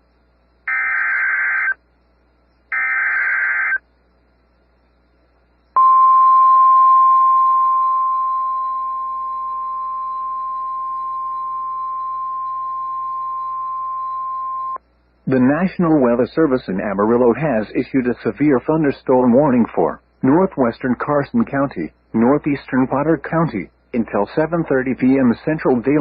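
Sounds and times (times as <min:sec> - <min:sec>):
steady warning alarm tone: 0:00.7 - 0:01.8, 0:02.7 - 0:03.8, 0:05.8 - 0:14.8.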